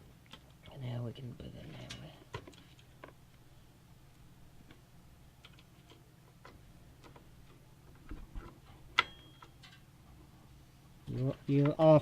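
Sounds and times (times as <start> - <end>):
computer parts clicking and tapping: 5.4 - 8.2, 9.0 - 9.8.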